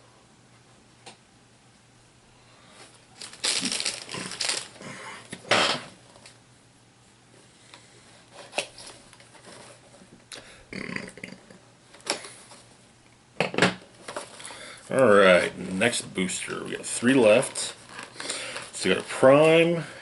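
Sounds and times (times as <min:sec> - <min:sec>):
packaging rustling and crinkling: 0:02.8 - 0:05.4, 0:13.9 - 0:19.8.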